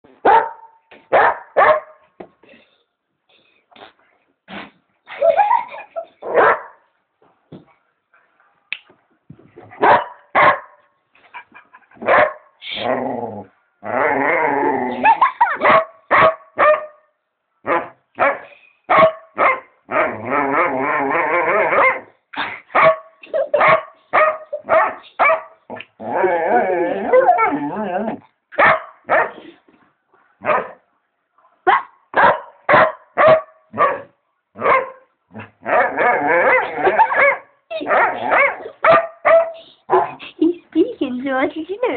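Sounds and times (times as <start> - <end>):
dog barking: 0.2 - 2.0, 6.3 - 6.8, 9.8 - 10.8, 12.0 - 12.5, 15.6 - 17.0, 17.7 - 19.7, 22.7 - 25.6, 28.6 - 29.4, 30.4 - 30.8, 31.7 - 35.1, 35.7 - 40.2
dog whining vocalisation: 26.1 - 28.2.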